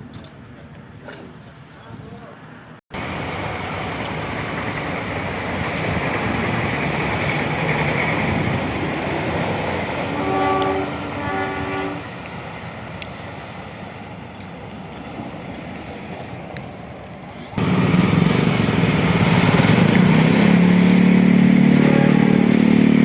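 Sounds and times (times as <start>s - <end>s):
heavy vehicle passing: 3.0s - 23.0s
air horn blasts: 10.1s - 12.1s, 21.6s - 22.9s.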